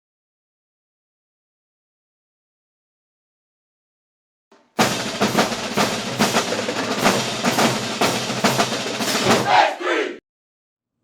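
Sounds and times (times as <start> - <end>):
snare and bass drums cadence: 4.5 - 9.8.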